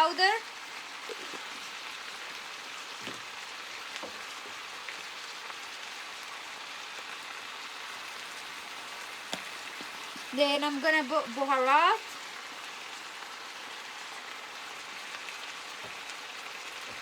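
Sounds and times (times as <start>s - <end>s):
food sizzling in a frying pan: 0.0s - 17.0s.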